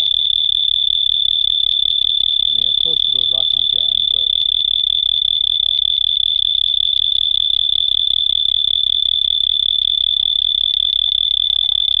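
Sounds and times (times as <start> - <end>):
high-pitched electronic whine: 0.0 - 1.0, 2.0 - 12.0
low pulsing hum: 10.0 - 12.0.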